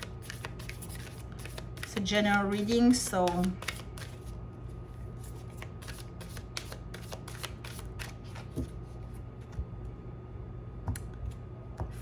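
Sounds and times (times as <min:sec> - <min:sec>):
cards being shuffled: 0:00.0 - 0:02.0, 0:03.2 - 0:04.3, 0:05.2 - 0:08.8.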